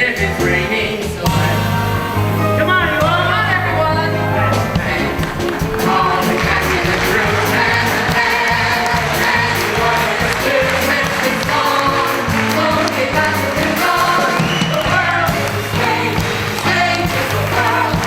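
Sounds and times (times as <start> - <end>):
band playing: 0.0 - 18.0
steady bass line: 0.0 - 18.0.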